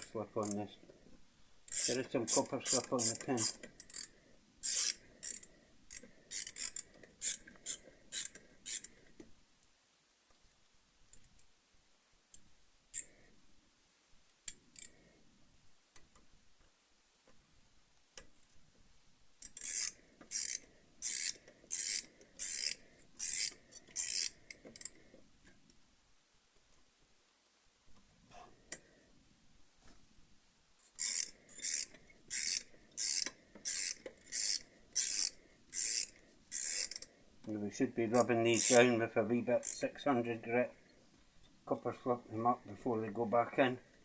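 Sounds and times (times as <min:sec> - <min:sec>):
scraping strokes on metal parts: 0:01.7 - 0:09.0, 0:19.4 - 0:25.0, 0:30.8 - 0:37.1, 0:38.2 - 0:39.0, 0:39.6 - 0:39.9.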